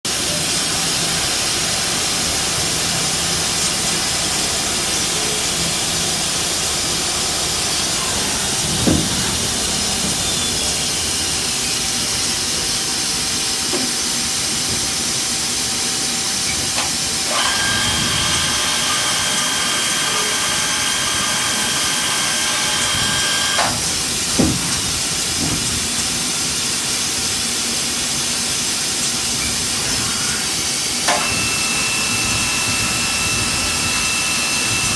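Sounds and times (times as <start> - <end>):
steady machine hiss: 0.1 - 34.9
high whine of spinning spindle: 16.2 - 24.1, 30.0 - 34.9.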